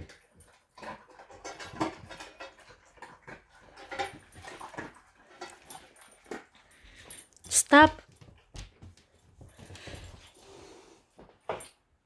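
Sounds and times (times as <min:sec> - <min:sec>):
dog crunching dry food: 0:00.0 - 0:07.6.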